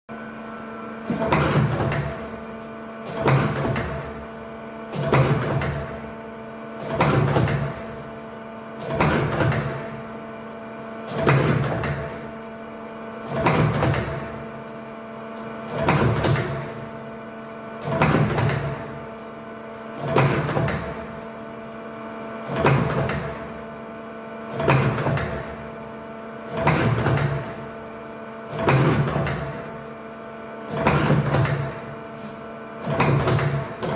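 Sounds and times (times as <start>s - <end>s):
electrical hum: 0.1s - 33.9s
machine turret whirring: 13.2s - 17.0s, 17.8s - 21.4s, 24.5s - 25.8s, 26.4s - 33.9s.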